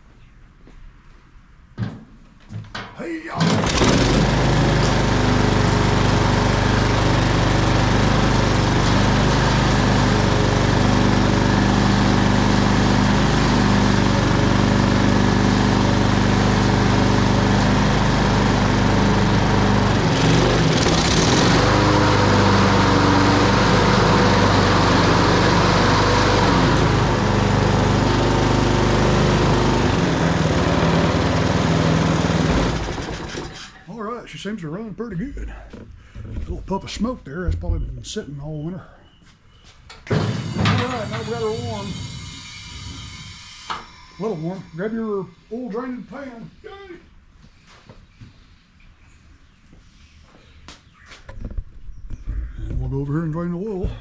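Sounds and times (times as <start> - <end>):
lawn mower engine running: 3.4 - 33.8, 40.1 - 45.6.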